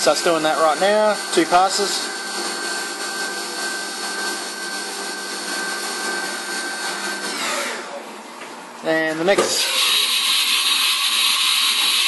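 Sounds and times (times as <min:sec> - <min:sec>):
milling machine cutting metal: 0:09.6 - 0:12.0.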